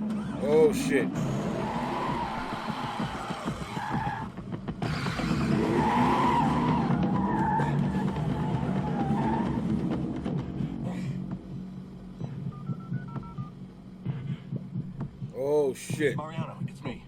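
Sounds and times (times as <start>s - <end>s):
tire squeal: 0.0s - 10.0s
car engine accelerating: 0.0s - 10.8s.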